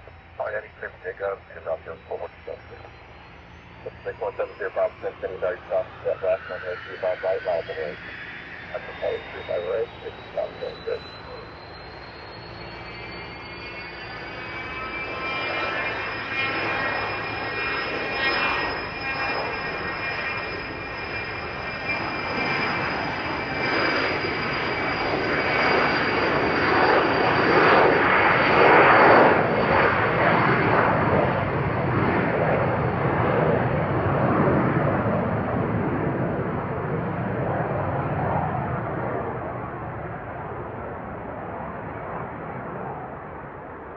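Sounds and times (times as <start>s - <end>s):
jet passing with engine whine: 0.0s - 43.9s.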